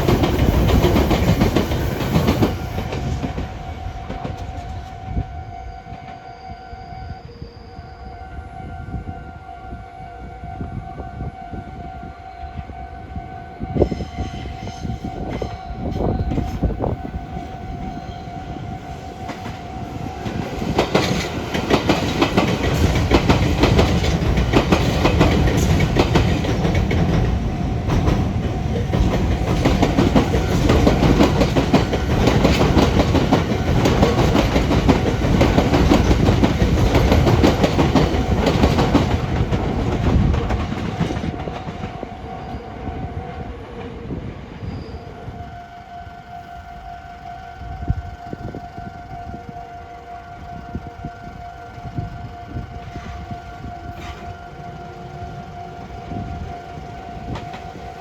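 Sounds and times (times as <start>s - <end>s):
train wheels clattering over rail joints: 0.0s - 5.0s, 19.0s - 42.0s.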